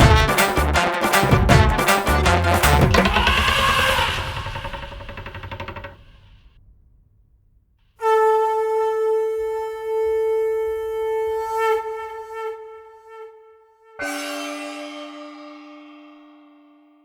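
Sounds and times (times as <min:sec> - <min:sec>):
loud horn blast: 0:00.0 - 0:03.0
lower-pitched horn blast: 0:00.0 - 0:03.0, 0:08.0 - 0:17.0.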